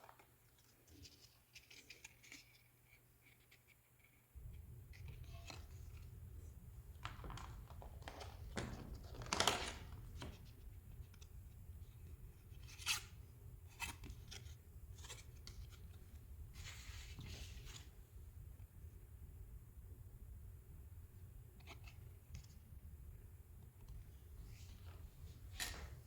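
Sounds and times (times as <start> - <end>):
card packaging rustling: 6.9 - 10.5.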